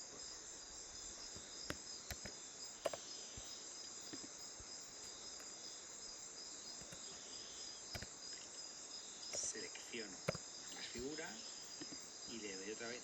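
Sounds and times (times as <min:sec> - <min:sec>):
high-pitched hiss and whine: 0:00.0 - 0:13.0
computer mouse clicks: 0:01.3 - 0:03.0, 0:06.8 - 0:07.2, 0:07.9 - 0:08.4, 0:09.3 - 0:09.5.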